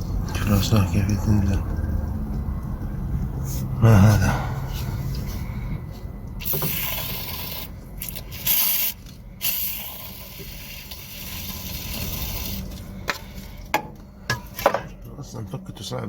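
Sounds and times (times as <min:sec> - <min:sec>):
low steady hum: 0:00.0 - 0:16.0
aerosol spray hissing: 0:06.4 - 0:12.6.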